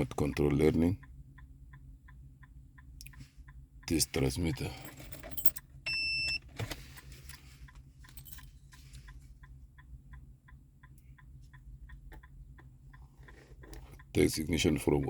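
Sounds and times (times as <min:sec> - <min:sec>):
soft electronic ticking: 0:00.0 - 0:04.8, 0:07.3 - 0:15.0
low steady hum: 0:00.0 - 0:15.0.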